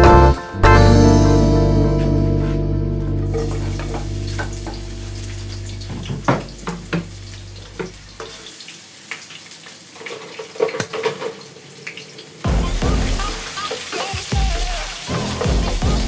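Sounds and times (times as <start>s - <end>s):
background music: 0.0s - 7.7s, 12.5s - 16.0s
water running and splashing: 3.2s - 16.0s.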